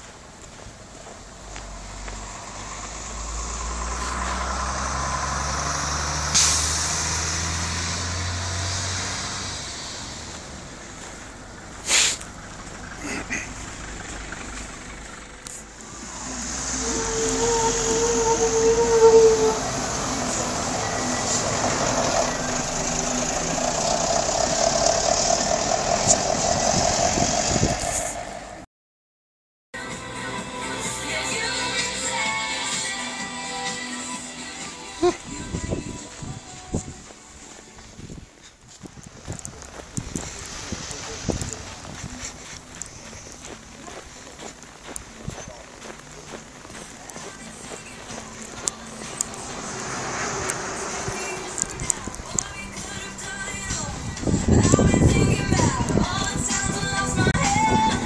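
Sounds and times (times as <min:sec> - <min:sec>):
large vehicle driving past: 0:00.7 - 0:28.6, 0:39.0 - 0:58.0
short sharp hiss: 0:06.3 - 0:07.1, 0:11.8 - 0:12.3
loud rushing noise: 0:15.9 - 0:28.6, 0:46.8 - 0:56.9.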